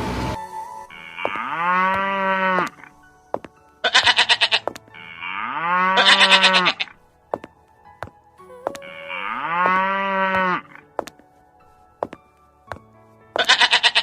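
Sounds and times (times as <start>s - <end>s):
music: 0.0s - 14.0s
quavering bleat: 5.3s - 6.9s, 8.8s - 10.7s, 13.4s - 14.0s.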